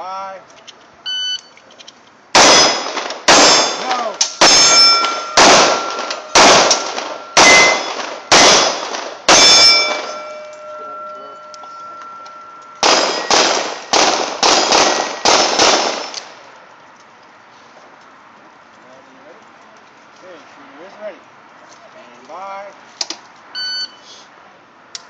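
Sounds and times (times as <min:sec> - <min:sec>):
pistol shots: 0:02.4 - 0:10.7, 0:12.7 - 0:16.5
steel plates clanging: 0:02.4 - 0:16.2.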